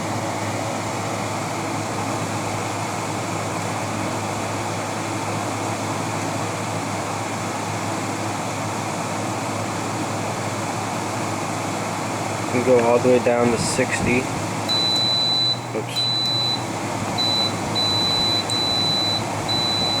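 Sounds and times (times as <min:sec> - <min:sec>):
air conditioner blowing air: 0:00.0 - 0:20.0
constant low hum: 0:12.6 - 0:20.0.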